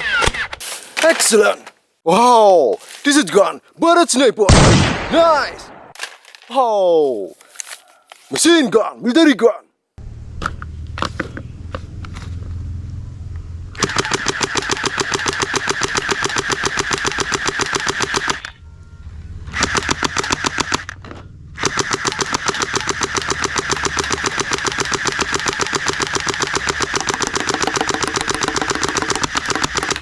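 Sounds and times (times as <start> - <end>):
toy machine gun firing: 13.8 - 18.6, 19.5 - 20.9, 21.6 - 30.0.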